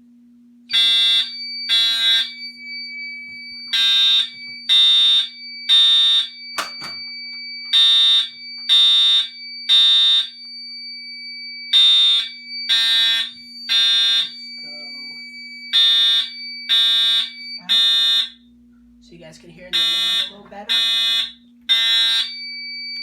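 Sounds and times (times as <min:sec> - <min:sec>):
fire alarm horn blasts: 0:00.7 - 0:23.0
faint steady high tone: 0:14.3 - 0:15.7.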